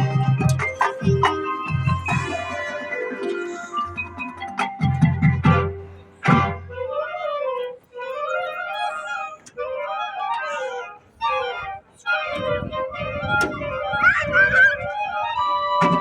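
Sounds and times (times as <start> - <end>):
drums: 0.0 - 6.7
marching band playing: 0.0 - 7.5.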